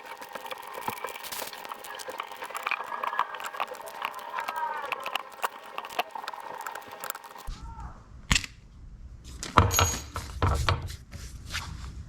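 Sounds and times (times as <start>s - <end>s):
hand tools clicking and knocking: 0.0s - 7.5s.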